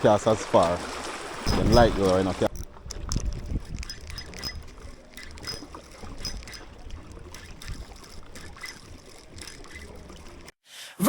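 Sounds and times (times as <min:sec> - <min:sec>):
water washing at shoreline: 0:00.0 - 0:10.6
wind buffeting microphone: 0:01.4 - 0:08.6.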